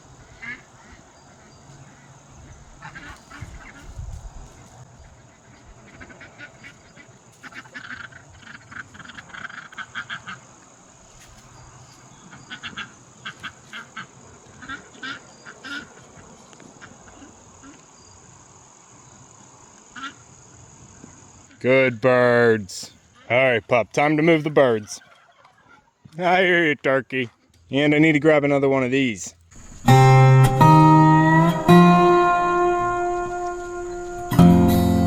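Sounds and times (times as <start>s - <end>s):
ducks quacking: 0.0s - 10.6s, 12.2s - 17.8s, 29.6s - 35.0s.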